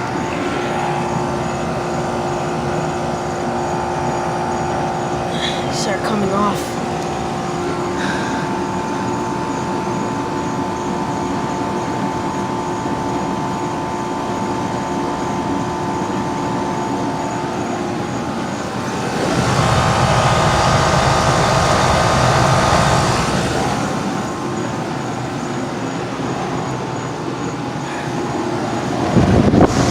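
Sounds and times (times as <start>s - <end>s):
air conditioner unit humming: 0.0s - 29.9s
loud rushing sound: 18.6s - 24.5s.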